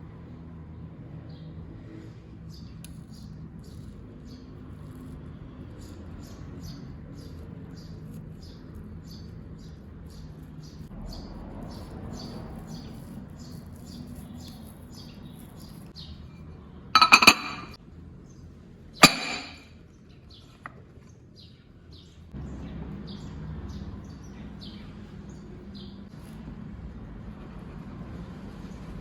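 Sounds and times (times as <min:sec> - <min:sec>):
birds chirping: 0:17.0 - 0:17.8
rattling clatter of hard objects: 0:17.0 - 0:17.8, 0:19.0 - 0:19.6
sharp ringing clink: 0:17.0 - 0:17.8, 0:19.0 - 0:19.7.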